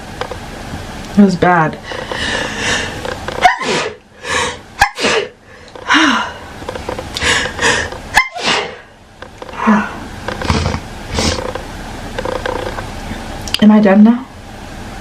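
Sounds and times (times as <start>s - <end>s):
short breaths: 1.8s - 3.0s, 3.8s - 6.5s, 7.2s - 8.8s
woman sneezing: 3.4s - 4.0s, 4.8s - 5.4s, 8.2s - 8.8s.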